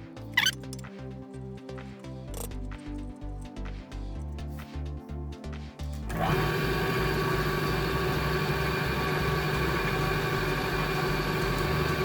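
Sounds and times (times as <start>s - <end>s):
background music: 0.0s - 12.0s
sander motor whining: 6.1s - 12.0s.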